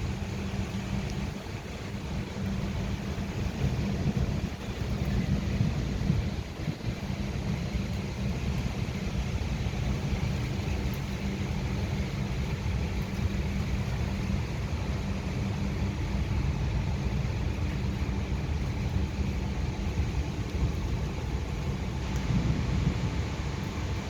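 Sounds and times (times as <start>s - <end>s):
continuous low rumble: 0.0s - 24.0s
rain hissing: 0.0s - 24.0s.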